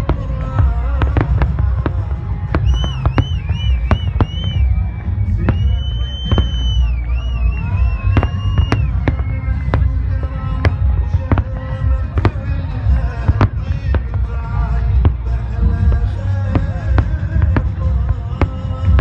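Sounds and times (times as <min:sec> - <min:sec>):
fireworks bangs: 0:00.0 - 0:19.0
heavy low rumble: 0:00.0 - 0:19.0
high wavering whistle: 0:02.6 - 0:09.8.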